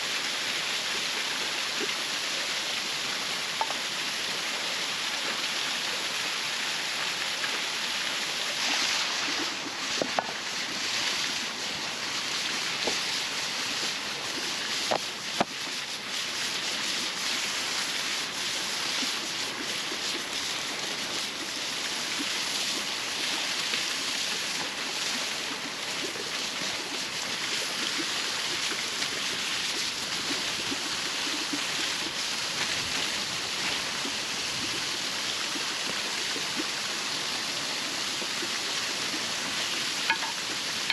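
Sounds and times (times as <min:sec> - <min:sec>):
waterfall rushing: 0:39.0 - 0:40.9.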